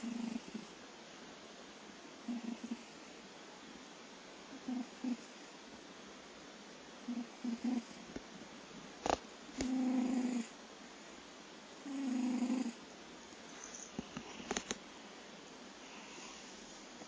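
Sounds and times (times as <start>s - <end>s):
cat snoring: 0.0s - 0.7s, 2.3s - 2.9s, 4.6s - 5.3s, 7.1s - 8.0s, 9.6s - 10.5s, 11.8s - 12.8s.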